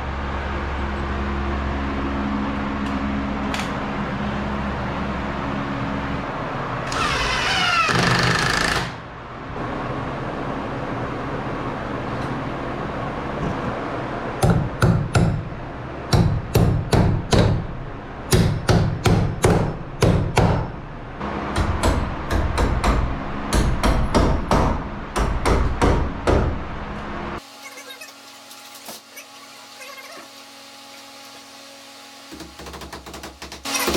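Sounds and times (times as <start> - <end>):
steady background hum: 0.0 - 33.9
hammer striking: 14.4 - 15.5, 16.1 - 17.6, 18.3 - 20.7, 21.5 - 26.6.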